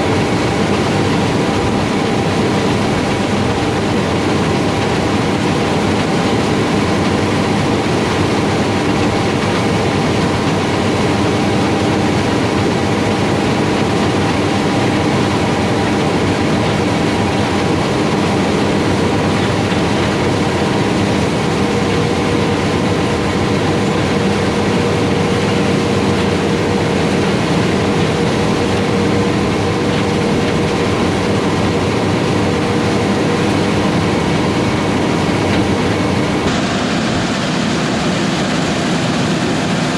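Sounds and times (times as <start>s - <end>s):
harvest machinery droning: 0.0s - 39.9s.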